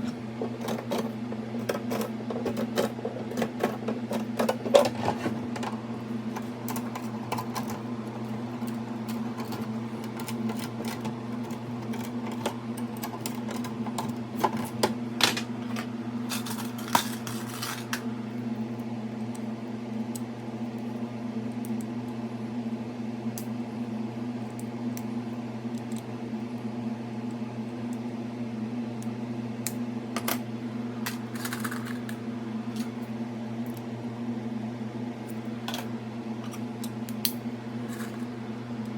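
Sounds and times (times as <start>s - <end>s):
low electrical hum: 0.0s - 38.9s.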